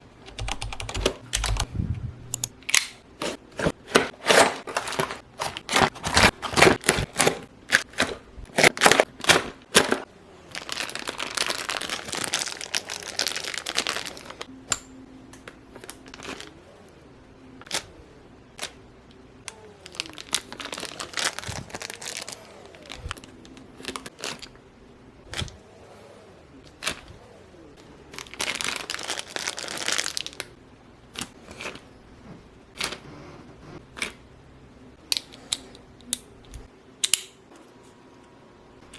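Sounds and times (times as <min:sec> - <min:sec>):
plastic crinkling and tearing: 0:04.3 - 0:14.5, 0:19.5 - 0:24.5, 0:26.8 - 0:30.6.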